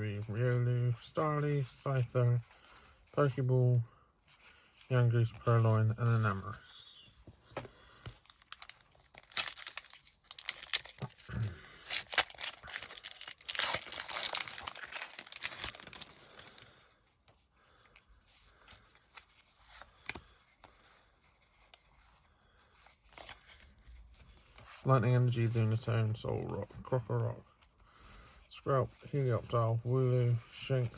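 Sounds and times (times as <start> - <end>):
foil wrapper tearing and crinkling: 8.3 - 16.8.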